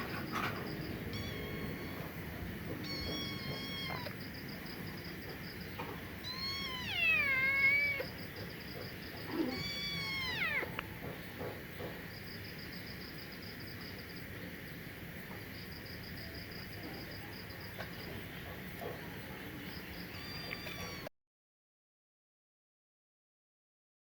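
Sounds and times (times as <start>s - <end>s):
high insect chirp: 0.0s - 21.1s
cat meowing: 1.0s - 4.2s, 6.2s - 8.2s, 9.3s - 11.1s, 20.1s - 21.1s.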